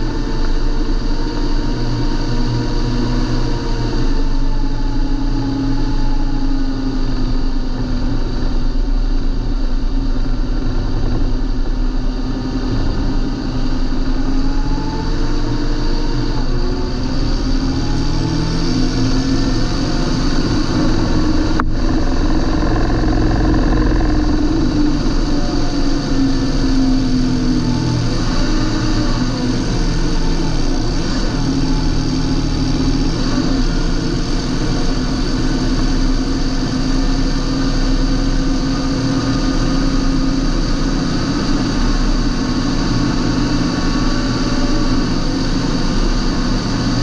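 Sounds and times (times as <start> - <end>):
tractor diesel engine running: 0.0 - 47.0.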